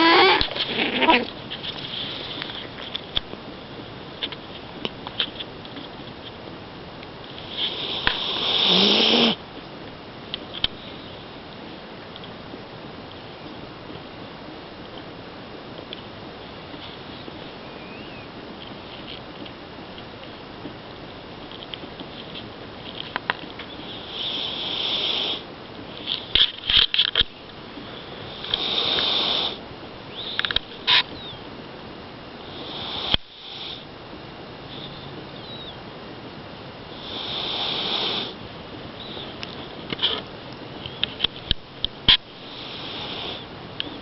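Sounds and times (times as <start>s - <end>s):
cat snoring: 0.0s - 1.3s, 7.5s - 9.4s, 23.9s - 25.4s, 28.3s - 29.6s, 32.4s - 33.8s, 36.9s - 38.4s, 42.5s - 43.5s.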